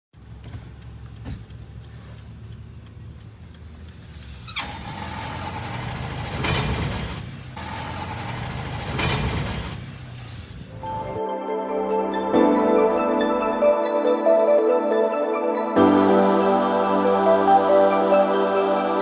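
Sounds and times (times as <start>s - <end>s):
van engine running: 0.2s - 10.7s.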